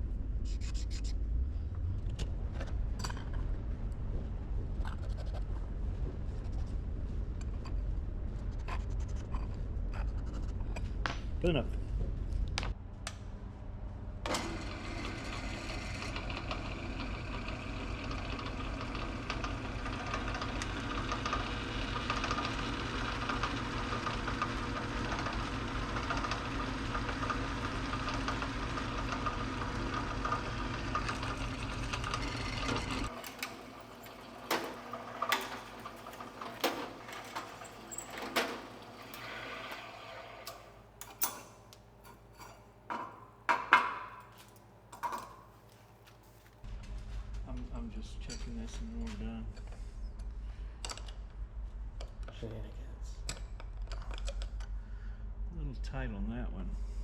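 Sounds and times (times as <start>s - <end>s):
power tool motor running: 14.3s - 41.3s
metal parts clicking and knocking: 33.1s - 39.4s, 40.4s - 45.6s.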